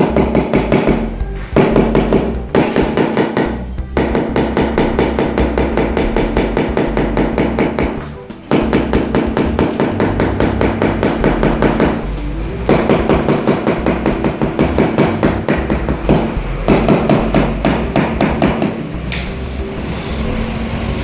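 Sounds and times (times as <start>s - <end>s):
rubber mallet tapping tile: 0.0s - 19.3s
background music: 0.0s - 21.0s.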